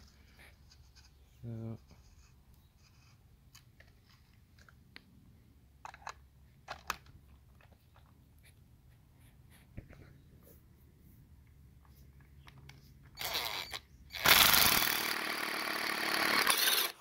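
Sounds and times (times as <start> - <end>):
auger bit boring into wood: 13.2 - 17.0
low steady drill hum: 13.2 - 17.0.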